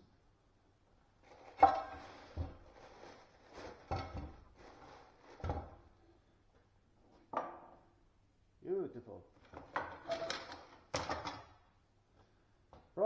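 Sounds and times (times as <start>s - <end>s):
hard objects knocking and clattering: 1.4s - 2.8s, 3.5s - 5.9s, 9.4s - 11.6s.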